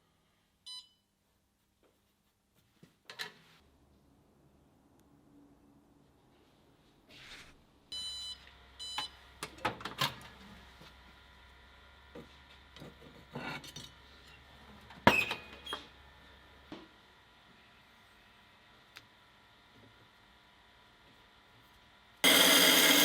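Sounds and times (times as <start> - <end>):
appliance humming: 22.2 - 23.0.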